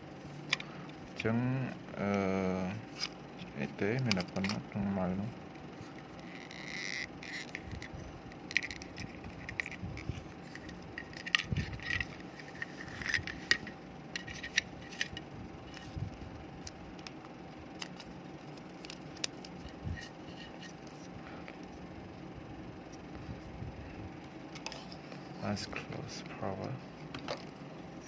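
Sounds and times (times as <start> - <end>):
small plastic parts clicking and rattling: 5.9 - 17.2, 17.8 - 21.1.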